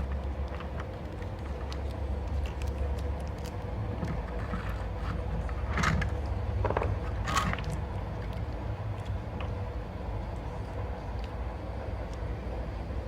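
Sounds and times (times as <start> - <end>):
small clicks and scrapes: 0.0 - 9.6
steady low hum: 0.0 - 13.0.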